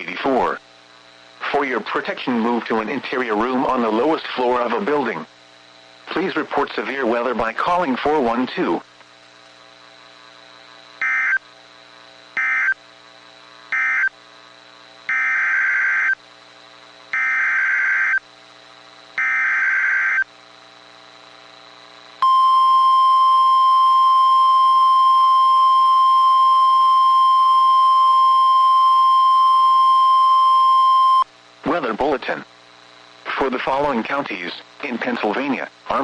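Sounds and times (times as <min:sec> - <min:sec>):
steady warning alarm tone: 0:11.0 - 0:11.4, 0:12.4 - 0:12.8, 0:13.7 - 0:14.1, 0:15.1 - 0:16.2, 0:17.1 - 0:18.2, 0:19.2 - 0:20.3, 0:22.2 - 0:31.3
screechy data bursts: 0:12.4 - 0:12.8, 0:17.2 - 0:18.2, 0:19.2 - 0:20.2.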